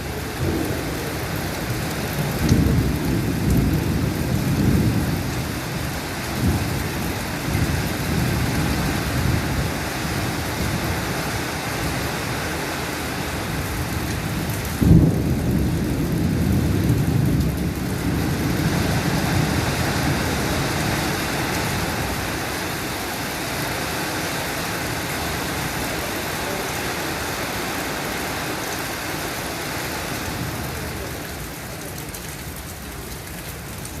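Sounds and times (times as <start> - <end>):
steady rain falling: 0.0 - 34.0
thunder clap and rumble: 0.2 - 12.4, 13.3 - 22.9.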